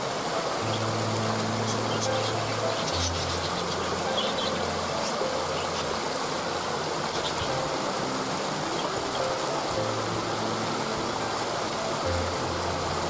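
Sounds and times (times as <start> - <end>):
small birds chirping: 0.0 - 9.8
waterfall rushing: 0.0 - 13.0.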